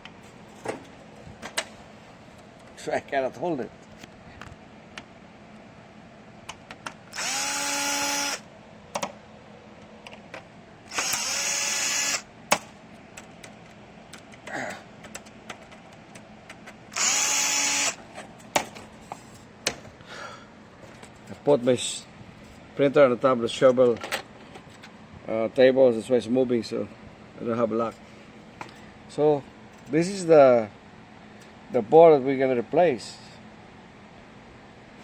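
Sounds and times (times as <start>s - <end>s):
electric screwdriver running: 7.1s - 8.4s, 10.9s - 12.3s, 17.0s - 18.0s.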